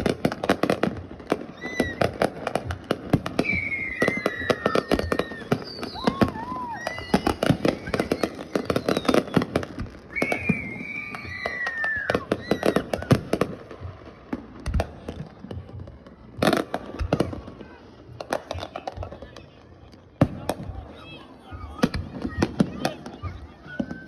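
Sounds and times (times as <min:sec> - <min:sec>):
fireworks popping and banging: 0:00.0 - 0:24.0
falling firework whistles: 0:01.5 - 0:02.1, 0:03.4 - 0:13.5.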